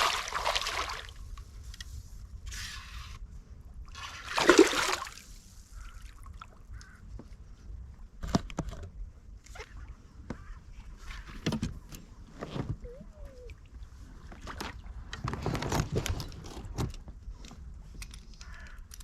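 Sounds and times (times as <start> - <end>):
water splashing: 0.0 - 1.2, 3.9 - 5.2.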